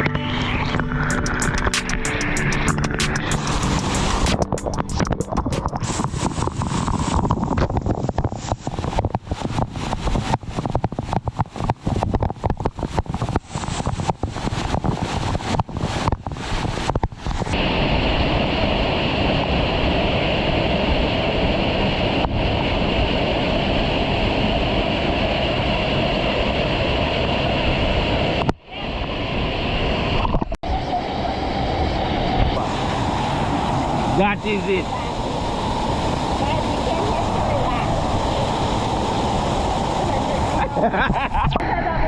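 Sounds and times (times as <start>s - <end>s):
waterfall rushing: 0.0s - 9.9s, 30.7s - 41.8s
wind buffeting microphone: 2.6s - 42.0s.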